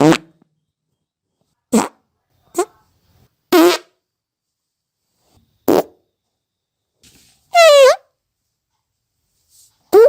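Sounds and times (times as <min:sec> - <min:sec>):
person farting: 0:00.0 - 0:00.4, 0:01.7 - 0:02.0, 0:03.5 - 0:04.0, 0:05.6 - 0:06.0.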